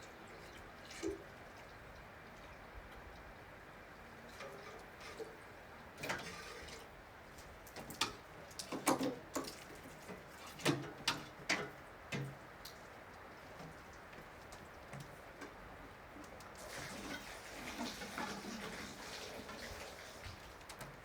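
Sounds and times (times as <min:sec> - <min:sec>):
water dripping: 0:07.3 - 0:15.6.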